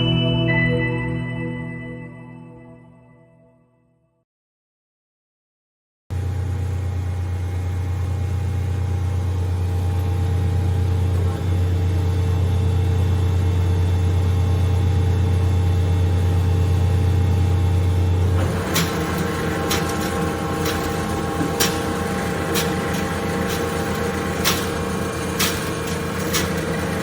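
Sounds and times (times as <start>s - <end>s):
bandsaw machine hum: 6.2s - 27.0s.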